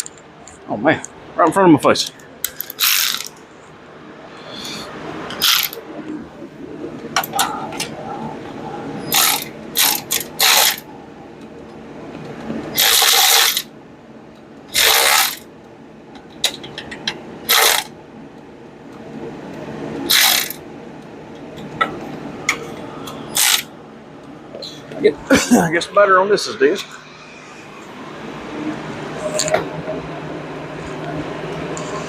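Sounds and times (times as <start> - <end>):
ratchet wrench clicking: 2.4 - 3.3, 5.4 - 5.8, 9.1 - 10.8, 12.8 - 13.7, 14.8 - 15.4, 17.5 - 17.9, 20.1 - 20.6, 23.4 - 23.7.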